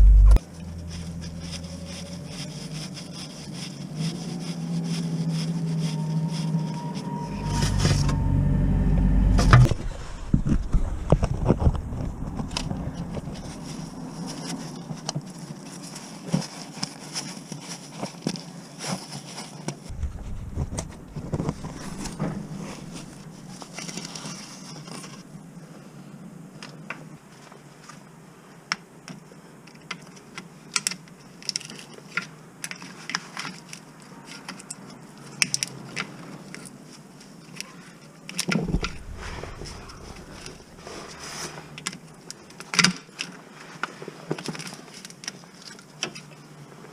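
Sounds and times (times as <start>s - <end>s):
low knocks: 19.9s - 23.4s.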